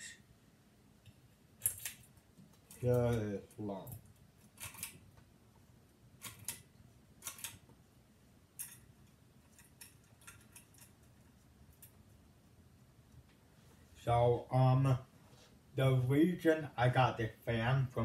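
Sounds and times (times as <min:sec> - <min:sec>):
ceiling fan humming: 0:00.0 - 0:18.0.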